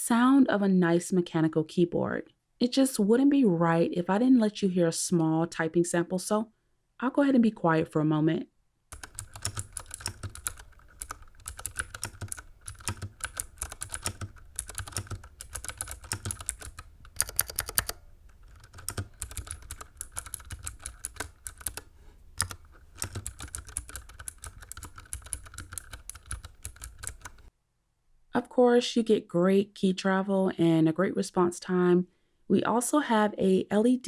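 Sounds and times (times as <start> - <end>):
clicky mechanical keyboard typing: 8.9 - 27.5.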